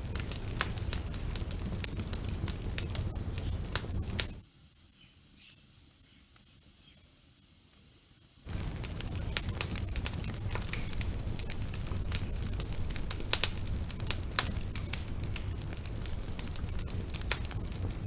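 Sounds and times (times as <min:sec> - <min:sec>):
wood fire crackling and popping: 0:00.0 - 0:04.4, 0:08.5 - 0:18.0
faint hiss: 0:00.0 - 0:18.0.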